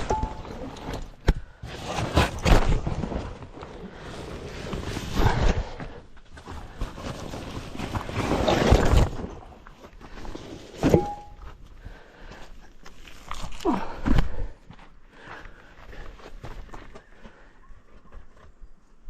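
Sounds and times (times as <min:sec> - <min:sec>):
shoes and clothing scraping rock: 0:00.0 - 0:11.2.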